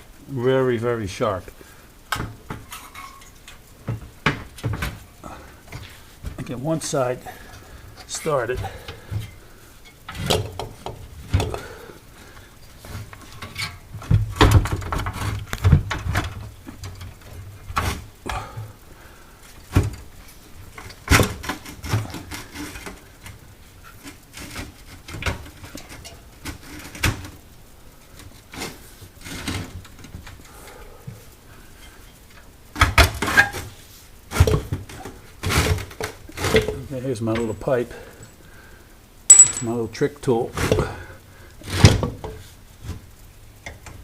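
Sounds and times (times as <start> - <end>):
metal parts clunking and rattling: 5.7 - 11.7, 12.9 - 18.1, 39.3 - 39.8.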